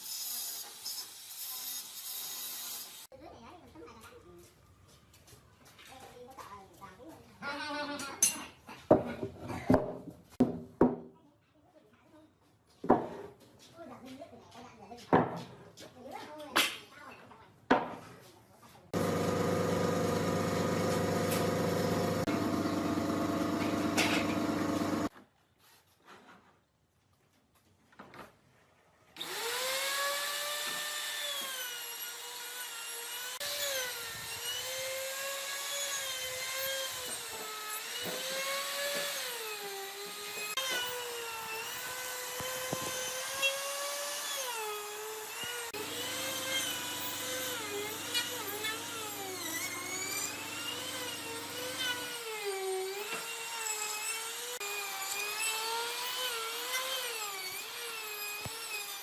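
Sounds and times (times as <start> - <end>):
power tool whining on wood: 19.0 - 25.1, 29.2 - 59.0.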